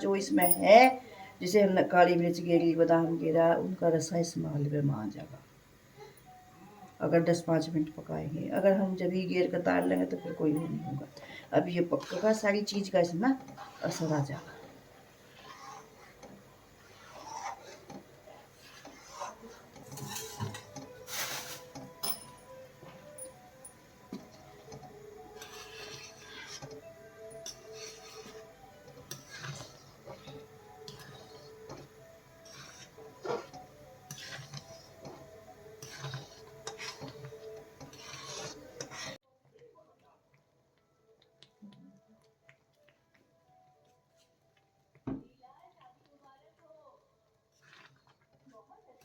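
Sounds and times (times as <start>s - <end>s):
spoon scraping a pan: 8.5s - 39.2s, 47.5s - 48.4s
food simmering: 13.4s - 21.1s, 45.8s - 48.7s.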